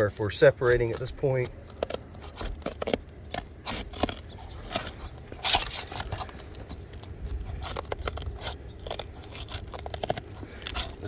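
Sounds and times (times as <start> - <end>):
roofing shingle crackling and tearing: 0.0 - 11.0
shingle ripping: 0.0 - 11.0.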